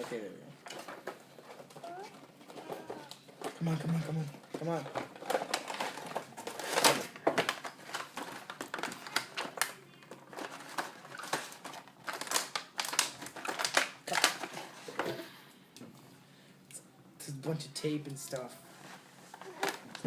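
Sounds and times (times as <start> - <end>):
cardboard packaging crinkling and tearing: 4.6 - 14.9.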